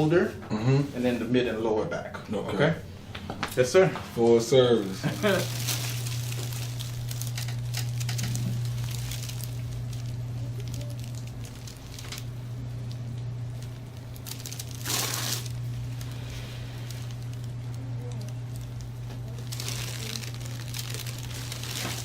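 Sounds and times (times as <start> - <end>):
steady low hum: 0.0 - 22.0
rustling of skin and fabric: 4.2 - 7.4, 13.6 - 22.0.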